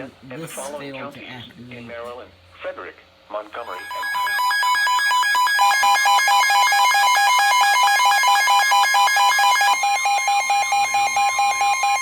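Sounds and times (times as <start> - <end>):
steady alert tone: 3.6 - 6.4
alarm beeping rapidly: 3.6 - 12.0.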